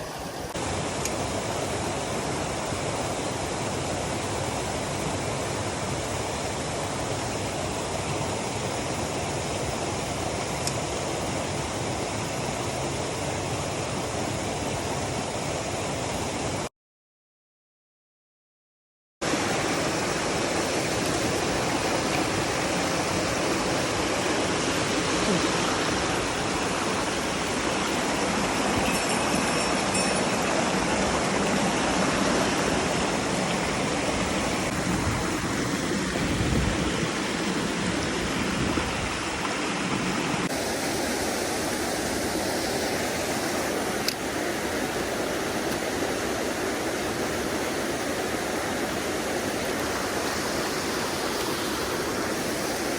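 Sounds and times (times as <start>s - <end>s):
water flowing over rocks: 19.2s - 52.9s.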